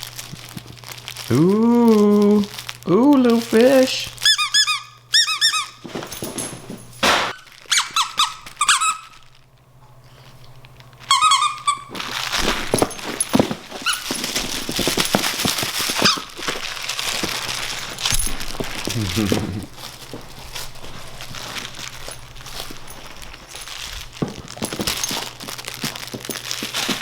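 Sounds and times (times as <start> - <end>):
crinkling and rustling: 0.0 - 27.0
squeaky dog toy squeaking: 4.2 - 5.9, 7.7 - 9.2, 11.0 - 12.0.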